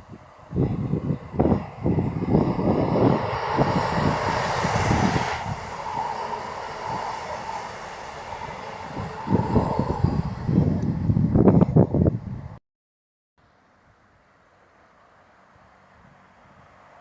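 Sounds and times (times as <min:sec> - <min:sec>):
train passing at speed: 0:00.0 - 0:12.6, 0:14.7 - 0:17.0
wind buffeting microphone: 0:00.0 - 0:12.6.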